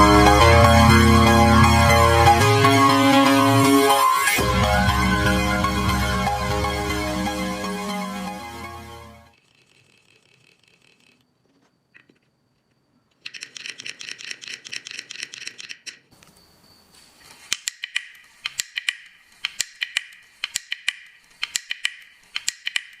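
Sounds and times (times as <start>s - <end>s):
sharp wooden taps: 17.5s - 23.0s.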